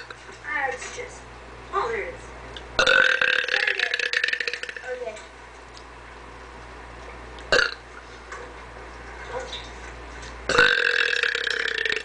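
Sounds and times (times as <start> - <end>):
woman belching: 2.8 - 4.9, 7.5 - 7.8, 10.5 - 12.0.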